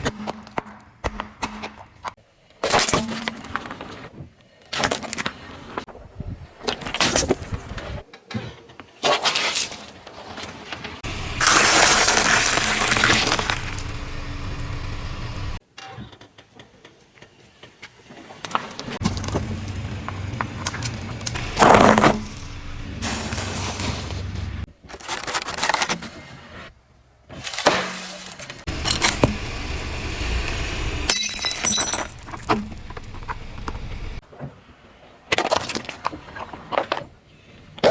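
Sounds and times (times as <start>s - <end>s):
things crunching under car tyre: 9.0s - 15.6s, 18.5s - 26.3s, 27.3s - 34.2s
low steady rumble: 11.0s - 15.6s, 19.0s - 24.7s, 28.7s - 34.2s
objects crushed under car tyre: 11.4s - 14.4s, 21.4s - 24.3s, 31.1s - 33.8s
glass clinking and shattering: 31.1s - 32.9s.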